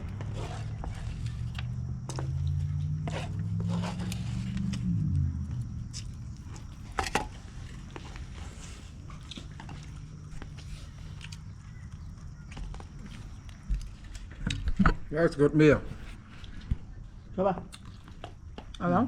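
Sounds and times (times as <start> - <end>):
vehicle engine passing by: 0.0 - 8.1.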